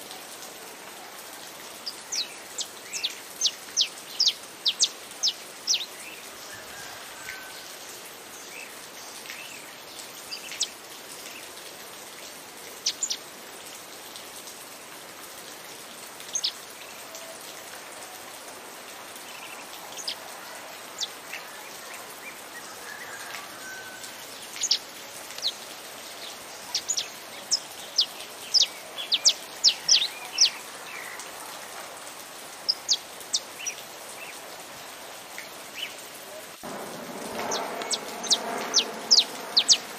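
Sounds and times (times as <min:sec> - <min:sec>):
rain hiss: 0:00.0 - 0:39.9
finch chipping: 0:37.8 - 0:39.9.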